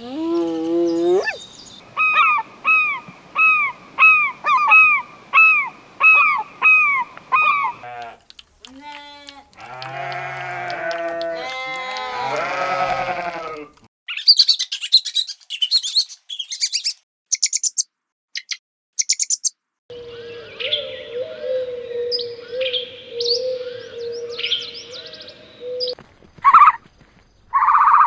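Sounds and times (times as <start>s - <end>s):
small birds chirping: 0.0s - 1.8s, 14.1s - 19.6s
livestock bleating: 8.8s - 13.7s.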